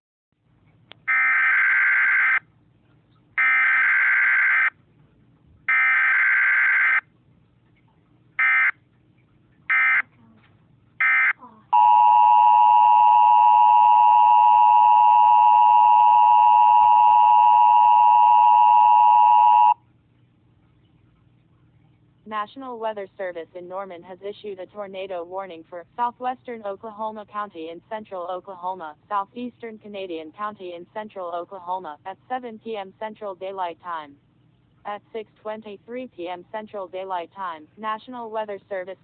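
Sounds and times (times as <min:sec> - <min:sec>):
two-tone attention signal: 0:11.0 - 0:19.8.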